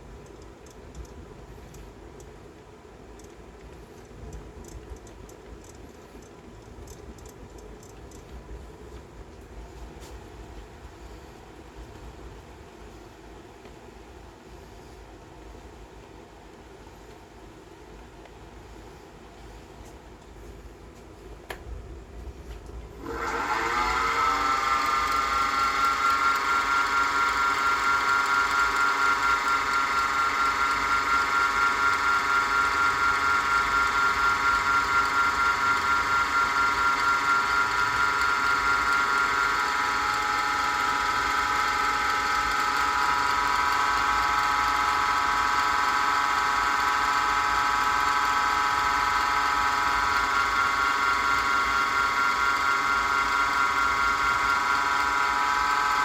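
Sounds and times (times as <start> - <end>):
lathe electric motor whine: 22.9 - 56.0.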